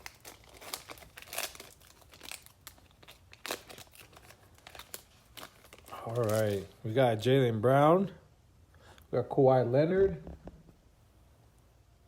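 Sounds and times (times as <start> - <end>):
plastic card packs crinkling: 0.0 - 7.2.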